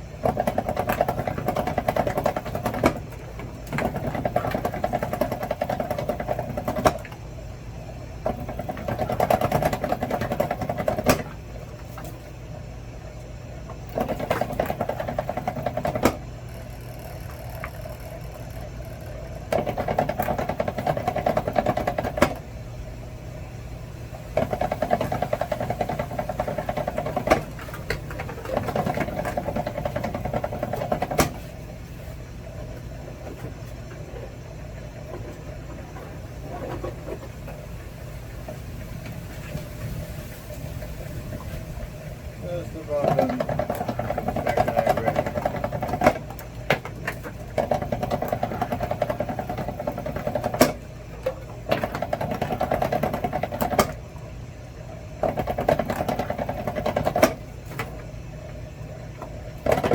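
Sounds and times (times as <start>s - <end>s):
wire stripping machine humming: 0.0s - 39.6s, 40.6s - 59.9s
machine whirring: 13.7s - 23.2s.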